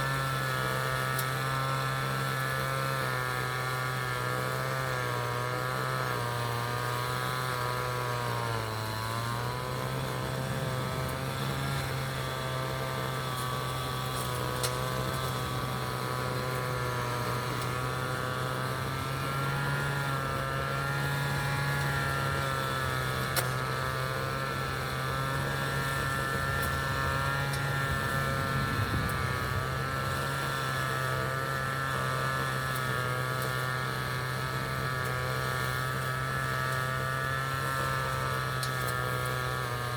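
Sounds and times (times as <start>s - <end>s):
traffic engine hum: 26.3s - 30.3s.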